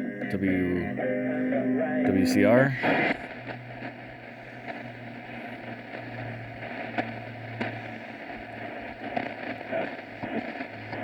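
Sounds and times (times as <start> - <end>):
radio static and hiss: 0.0 - 11.0
low steady hum: 2.8 - 11.0
sharp crackles: 2.8 - 11.0.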